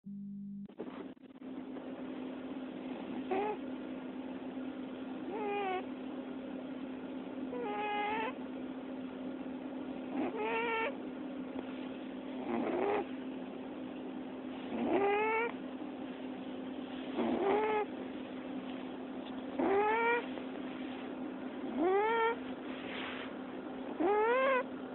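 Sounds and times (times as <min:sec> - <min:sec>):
cat squeak-snoring: 0:03.0 - 0:03.6, 0:05.3 - 0:05.8, 0:07.5 - 0:08.4, 0:10.1 - 0:11.0, 0:12.4 - 0:13.1, 0:14.6 - 0:15.5, 0:17.2 - 0:17.9, 0:19.6 - 0:20.3, 0:21.7 - 0:22.4, 0:23.9 - 0:24.6.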